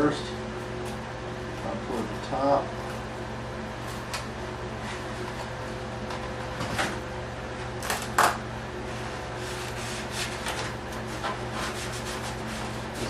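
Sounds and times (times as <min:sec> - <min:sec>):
foam rubbing: 0:08.8 - 0:13.0.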